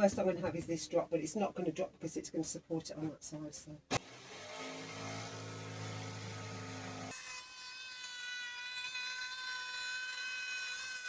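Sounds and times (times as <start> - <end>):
electric jigsaw cutting plywood: 3.9 - 11.0.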